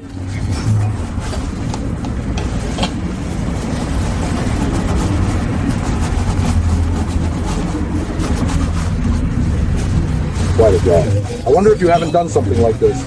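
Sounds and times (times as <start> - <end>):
motor rumbling and humming: 0.0 - 13.0.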